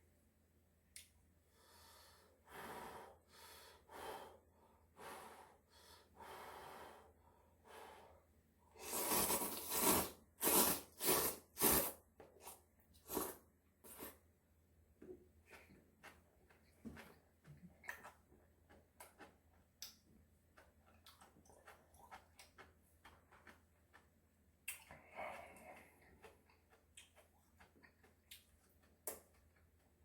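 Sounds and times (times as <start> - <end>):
close chewing and slurping: 8.8 - 14.2, 15.1 - 30.0.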